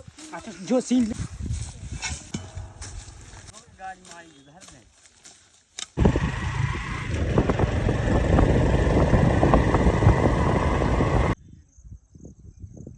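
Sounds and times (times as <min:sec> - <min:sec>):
vehicle engine rumbling: 0:06.0 - 0:11.4.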